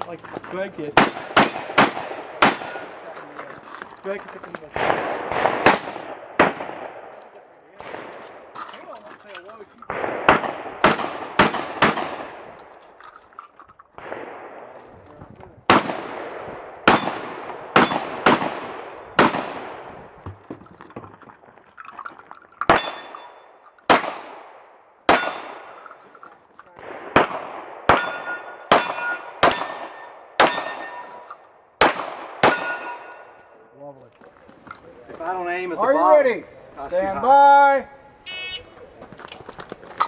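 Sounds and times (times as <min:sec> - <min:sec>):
gunshots: 0:00.8 - 0:03.4, 0:04.6 - 0:08.9, 0:09.9 - 0:12.8, 0:13.9 - 0:20.2, 0:22.7 - 0:26.0, 0:26.7 - 0:33.4
steel targets ringing: 0:22.7 - 0:23.5, 0:25.1 - 0:25.8, 0:27.9 - 0:31.3, 0:32.5 - 0:33.3.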